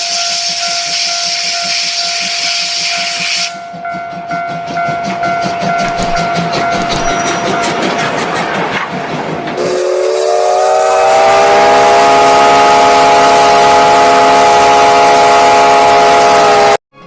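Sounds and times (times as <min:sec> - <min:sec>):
steam locomotive whistle: 0:00.0 - 0:03.7, 0:09.6 - 0:16.8.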